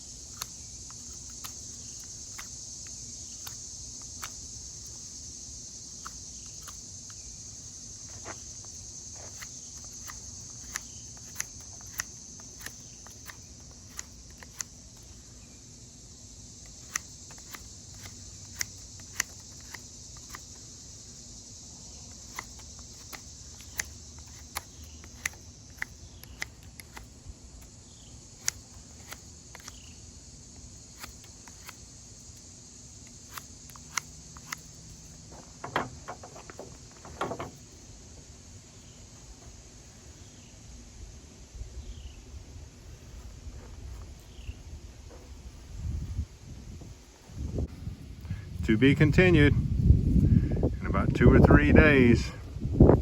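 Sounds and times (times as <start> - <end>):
insect drone: 0.0 - 53.0.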